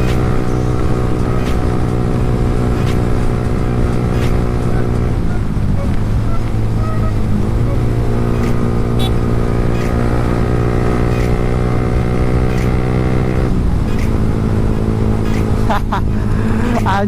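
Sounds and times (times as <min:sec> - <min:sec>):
motorcycle engine cruising: 0:00.0 - 0:17.0.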